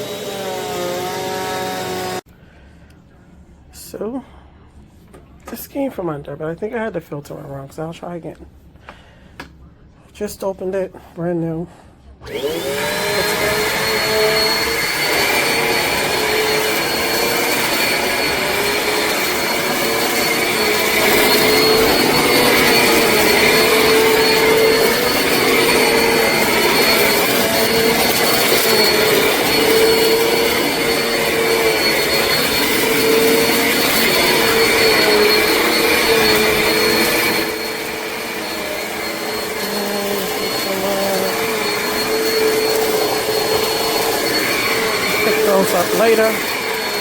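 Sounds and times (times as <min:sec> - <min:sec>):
vacuum cleaner running: 0:00.0 - 0:02.3, 0:12.2 - 0:47.0.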